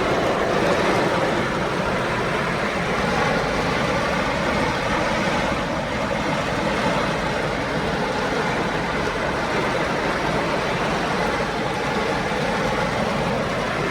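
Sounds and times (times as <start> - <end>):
heavy rain rushing: 0.0 - 5.0.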